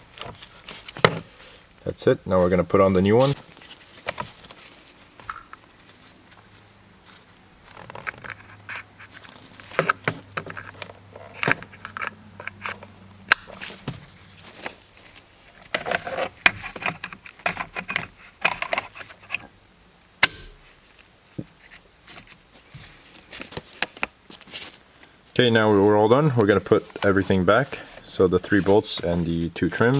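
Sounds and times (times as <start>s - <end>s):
plastic switch snapping: 20.2s - 20.6s.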